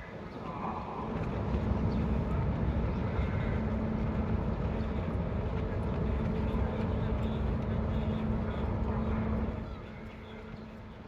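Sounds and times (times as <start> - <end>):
constant hum: 0.0 - 11.0.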